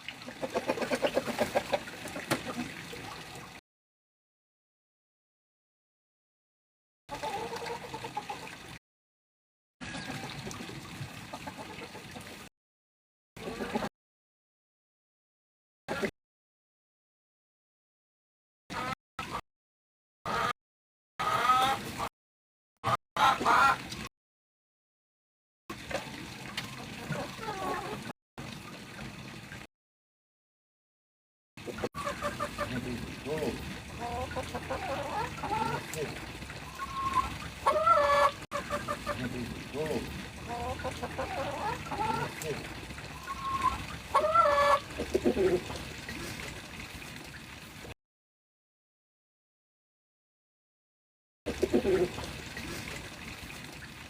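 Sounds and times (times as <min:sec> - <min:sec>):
chickens clucking: 0:00.2 - 0:02.7, 0:07.1 - 0:08.6, 0:11.3 - 0:12.4, 0:21.2 - 0:21.8, 0:23.2 - 0:23.8, 0:31.6 - 0:45.8, 0:51.5 - 0:52.2
hens calling: 0:32.0 - 0:45.7
hen squawking: 0:36.6 - 0:39.2, 0:40.5 - 0:45.7.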